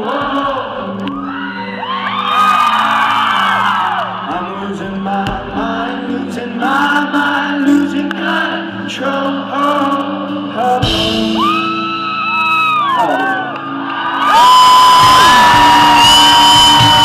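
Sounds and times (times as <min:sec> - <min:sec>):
person singing: 0:00.0 - 0:17.0
rock band playing live: 0:09.6 - 0:13.8, 0:14.4 - 0:17.0.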